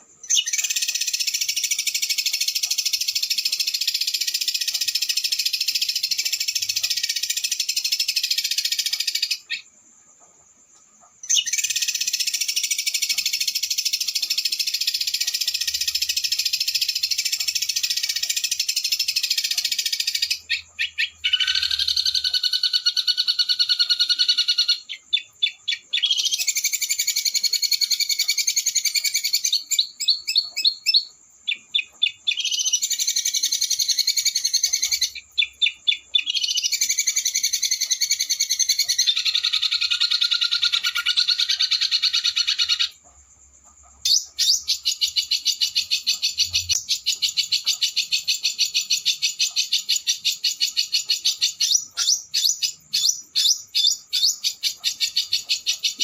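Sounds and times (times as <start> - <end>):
songbirds trilling: 10.9 - 56.0
harsh bird chattering: 11.3 - 43.0, 44.0 - 56.0.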